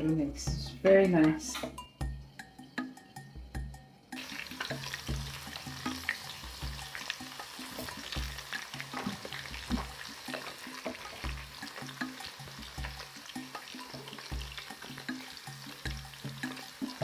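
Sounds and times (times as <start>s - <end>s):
background music with low beat: 0.0s - 17.0s
food deep frying in oil: 4.2s - 17.0s.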